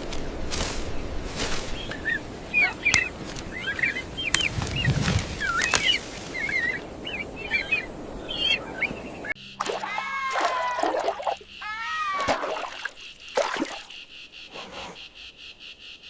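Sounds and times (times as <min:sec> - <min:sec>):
background hiss: 0:00.0 - 0:09.6
birds chirping: 0:00.2 - 0:16.0.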